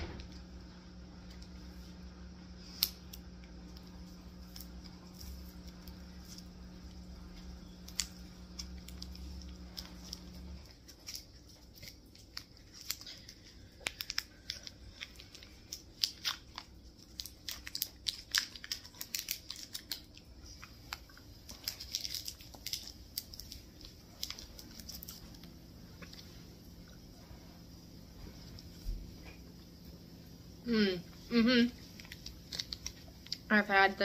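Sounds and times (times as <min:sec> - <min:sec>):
plastic snack packaging crinkling: 0:02.6 - 0:26.4, 0:31.8 - 0:34.0.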